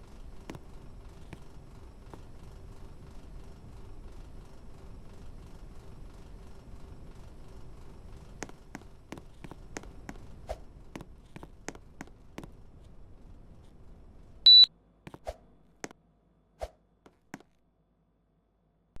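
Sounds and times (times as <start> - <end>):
air conditioner fan running: 0.0 - 14.7
short high beep: 14.5 - 14.7.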